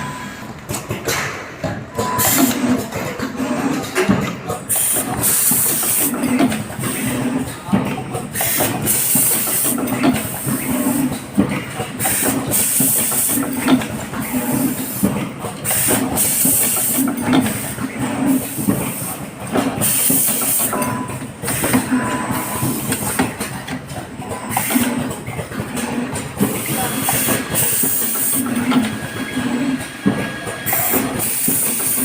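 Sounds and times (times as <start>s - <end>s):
machine hissing bursts: 15.6s - 17.8s, 30.6s - 32.0s.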